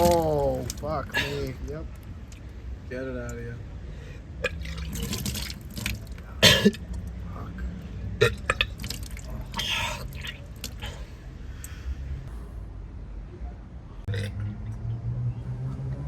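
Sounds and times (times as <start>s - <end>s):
liquid splattering: 0.0s - 1.5s, 4.4s - 6.9s, 8.2s - 11.1s
man retching and vomiting: 0.0s - 1.6s, 4.4s - 6.9s, 8.2s - 11.1s, 14.1s - 14.4s.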